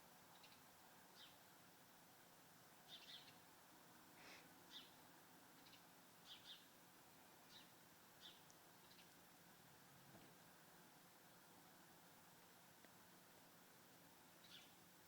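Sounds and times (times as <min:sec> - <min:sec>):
small birds chirping: 0:00.3 - 0:01.4, 0:02.8 - 0:03.4, 0:04.7 - 0:05.0, 0:05.6 - 0:06.7, 0:07.5 - 0:09.2, 0:14.3 - 0:14.8.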